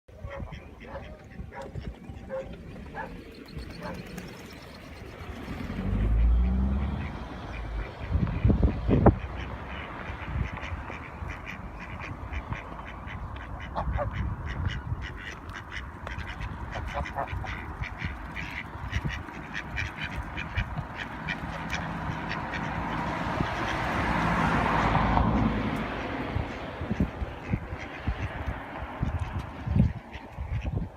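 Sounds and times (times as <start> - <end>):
swan honking: 0.1 - 23.8.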